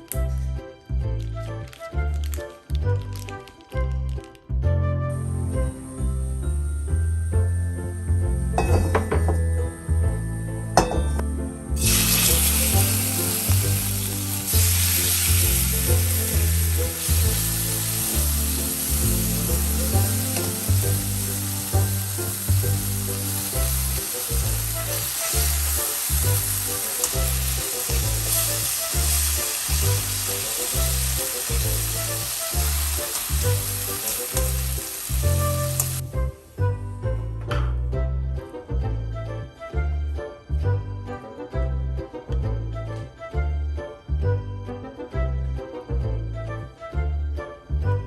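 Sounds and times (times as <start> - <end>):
background music with steady beat: 0.0 - 48.0
meat sizzling in a hot pan: 11.8 - 36.0.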